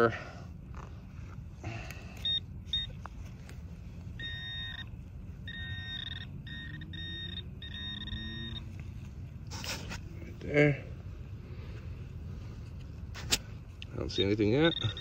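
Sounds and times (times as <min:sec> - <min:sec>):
metal detector high beeps: 0:02.2 - 0:03.0, 0:04.2 - 0:08.8, 0:14.0 - 0:15.0.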